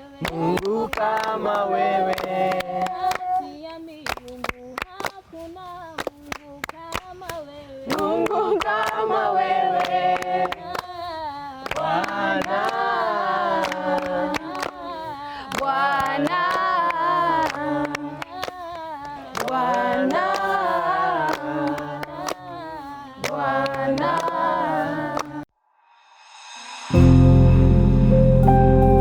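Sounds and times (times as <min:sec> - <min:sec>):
group singing unaccompanied: 0:00.0 - 0:03.8, 0:07.7 - 0:25.5
hand claps: 0:00.0 - 0:25.4.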